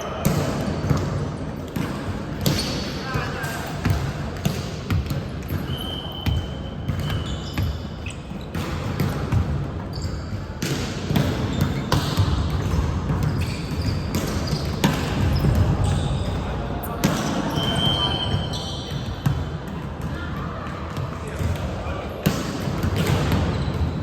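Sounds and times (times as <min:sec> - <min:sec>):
volleyball hits and bounces: 0:00.0 - 0:24.0.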